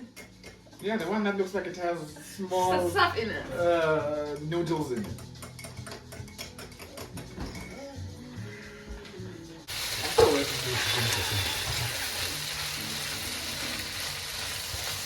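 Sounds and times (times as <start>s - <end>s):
meat sizzling in a pot: 9.7s - 15.0s.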